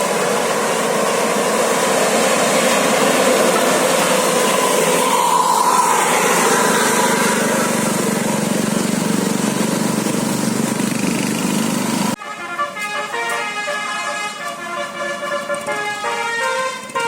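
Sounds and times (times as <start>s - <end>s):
bus engine and road noise: 0.0s - 17.0s
musical multi-tone air horn: 12.2s - 17.0s.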